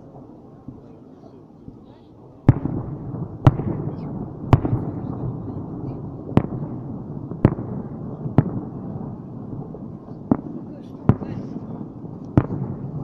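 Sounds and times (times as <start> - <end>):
firework shells bursting with bangs: 2.4 - 13.0.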